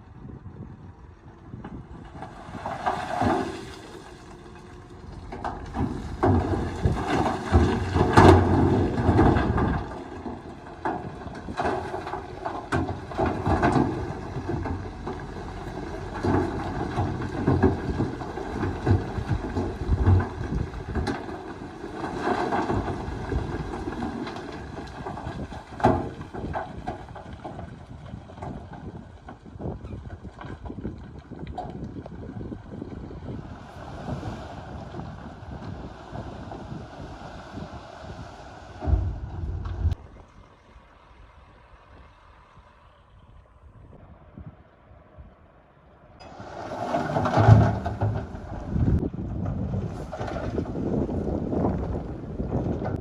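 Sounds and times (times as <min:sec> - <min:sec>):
heavy diesel machinery engine: 0:03.8 - 0:26.5.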